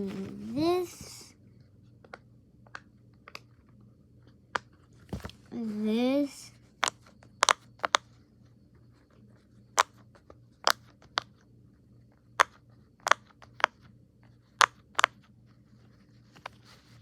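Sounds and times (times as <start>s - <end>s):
pop-it toy bubbles popping: 6.8s - 8.0s.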